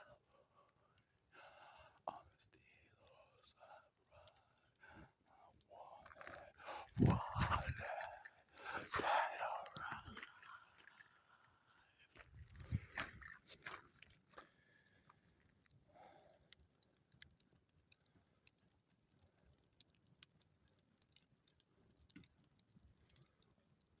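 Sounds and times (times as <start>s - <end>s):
campfire crackling: 0.0s - 24.0s.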